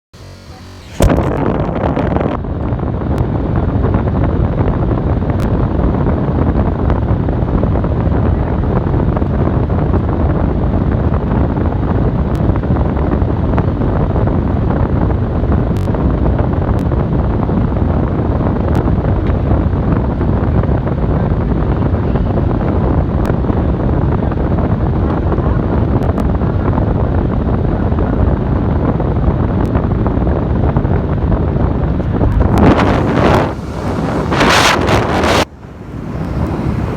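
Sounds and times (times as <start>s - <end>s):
loud rushing rumble: 0.1s - 2.6s, 30.8s - 36.9s.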